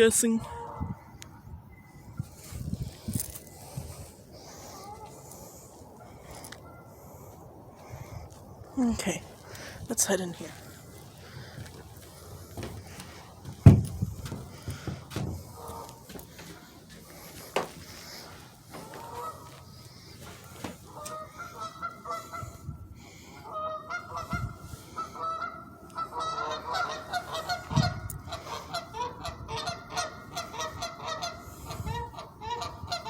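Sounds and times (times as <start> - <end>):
geese honking: 0.4 - 0.9, 4.0 - 8.0, 9.5 - 33.0
low thumps: 12.6 - 15.6.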